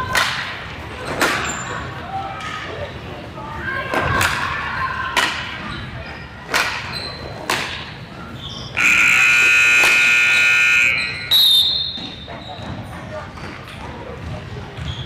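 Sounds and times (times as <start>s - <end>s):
loud buzzer: 8.8s - 11.4s.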